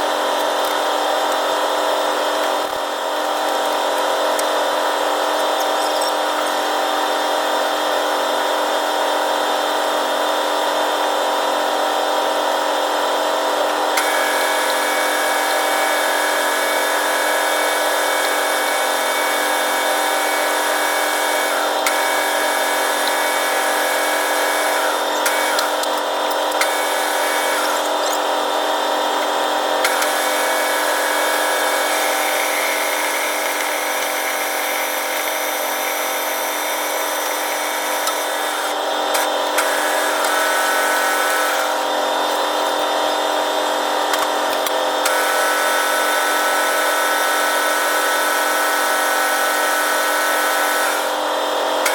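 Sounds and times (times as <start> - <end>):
lathe machine hum: 0.0 - 51.9
high-pitched whine: 2.6 - 8.2, 14.1 - 42.9.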